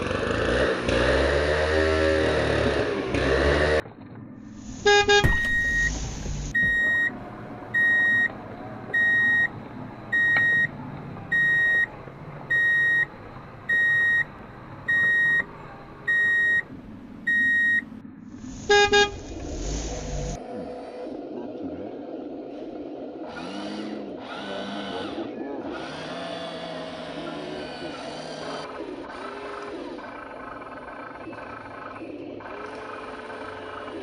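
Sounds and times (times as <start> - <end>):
reversing alarm beeping: 4.9 - 8.3, 8.9 - 11.9, 12.5 - 13.1, 13.7 - 14.3, 14.9 - 15.5, 16.1 - 16.6, 17.3 - 17.9.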